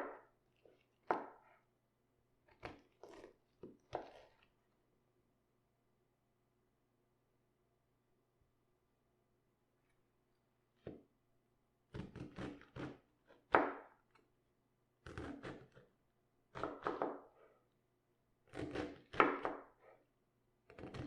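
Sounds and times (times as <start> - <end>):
knife chopping on wooden board: 0.0 - 0.3, 1.0 - 1.4, 11.9 - 13.9, 15.0 - 15.8, 16.6 - 17.3, 18.5 - 19.7, 20.7 - 21.0.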